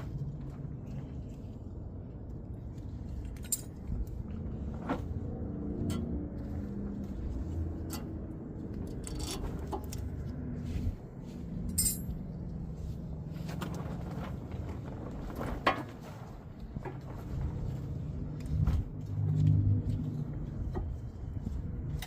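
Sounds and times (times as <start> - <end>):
steady low rumble: 0.0 - 22.0
metal clinks and clicks: 8.8 - 10.0, 11.7 - 12.2.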